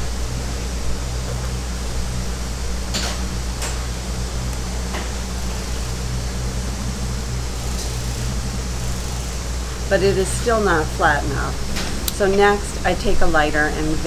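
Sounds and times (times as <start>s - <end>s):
room noise hum and hiss: 0.0s - 14.0s.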